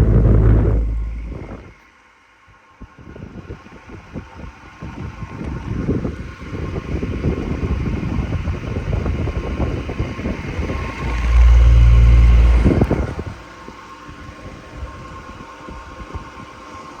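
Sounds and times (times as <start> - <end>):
loud deep hum: 0.0 - 1.7, 9.6 - 13.9
stand fan humming: 0.0 - 1.7, 5.2 - 17.0
airflow buffeting microphone: 0.0 - 1.8, 5.6 - 15.3.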